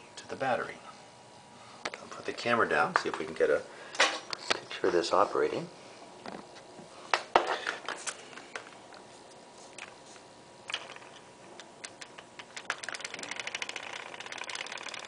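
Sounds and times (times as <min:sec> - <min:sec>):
motor running with fast ticking: 0:11.9 - 0:15.0.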